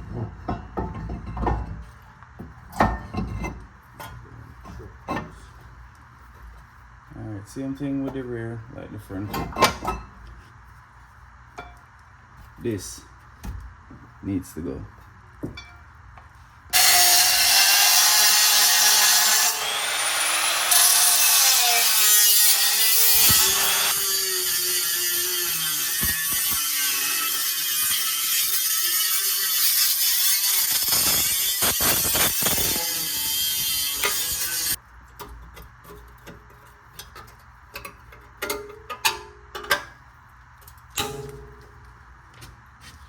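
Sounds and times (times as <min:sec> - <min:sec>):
angle grinder cutting steel: 0:16.8 - 0:34.8.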